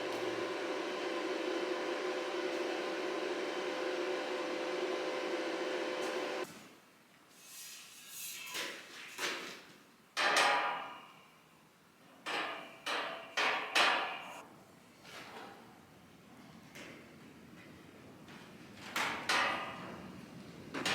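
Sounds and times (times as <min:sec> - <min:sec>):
angle grinder whining: 0:00.0 - 0:06.4.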